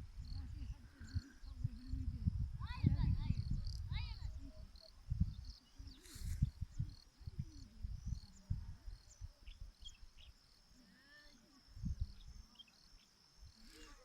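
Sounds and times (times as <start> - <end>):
insects chirring: 0.2 - 14.0
bird chirps: 9.1 - 10.4.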